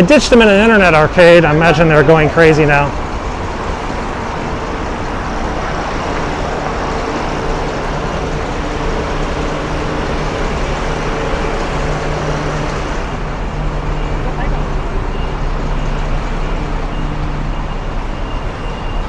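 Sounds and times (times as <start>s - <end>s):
city street traffic hum: 0.0s - 19.0s
low engine drone: 0.0s - 19.0s.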